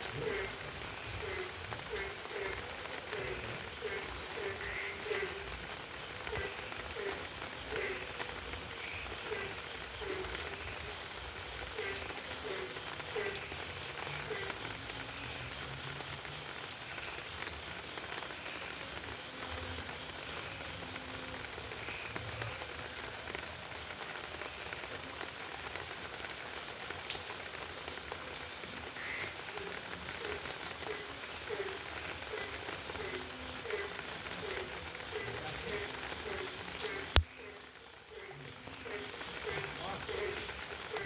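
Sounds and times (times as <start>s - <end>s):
frog croaking: 0.0s - 11.0s, 11.7s - 15.4s, 28.9s - 41.0s
rain falling: 0.0s - 41.0s
raindrops ticking: 0.0s - 41.0s.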